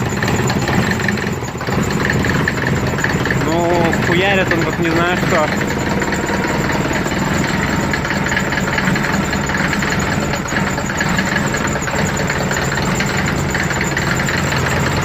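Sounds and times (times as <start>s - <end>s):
diesel engine idling with knock: 0.0s - 15.0s.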